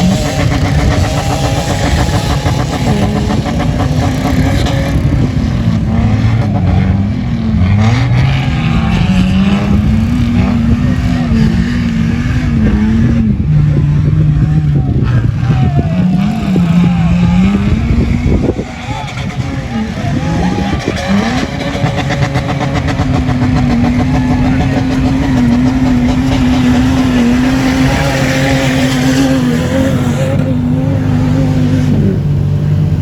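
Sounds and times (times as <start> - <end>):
suv engine revving: 0.0 - 33.0.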